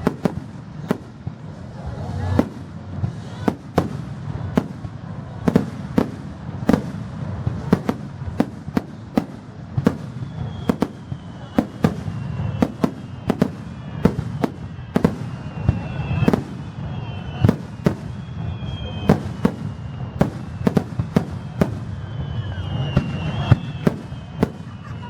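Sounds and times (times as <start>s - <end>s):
high whistle sliding down: 10.1s - 25.0s.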